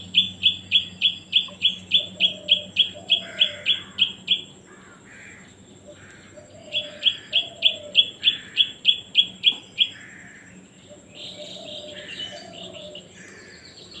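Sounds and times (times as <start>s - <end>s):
baby crow begging calls: 0.2s - 5.4s, 6.0s - 10.5s.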